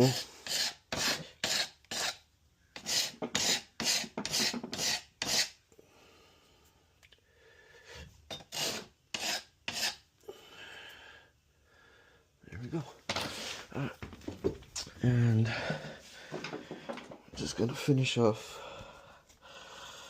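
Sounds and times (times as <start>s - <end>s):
chisel scraping wood: 0.0s - 2.2s, 2.8s - 5.6s, 8.3s - 10.0s.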